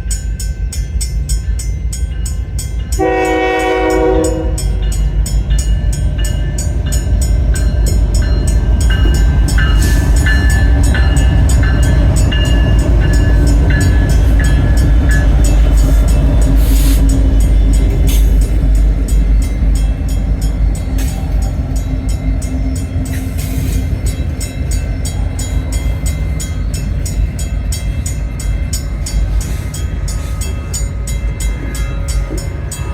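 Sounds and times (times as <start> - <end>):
train rumbling past: 0.0 - 32.9
train horn blast: 3.0 - 5.1.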